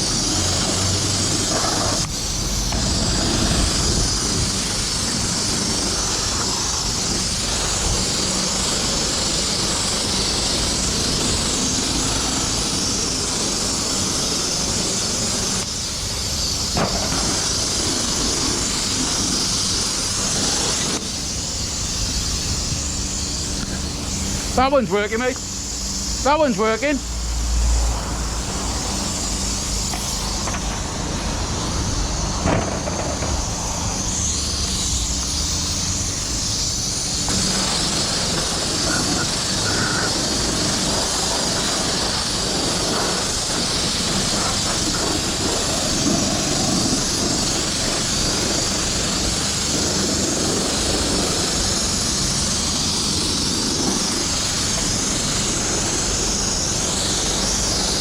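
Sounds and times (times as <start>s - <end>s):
bike tyres on ground: 0.0s - 26.4s, 27.0s - 58.0s
wind rushing: 1.6s - 8.4s.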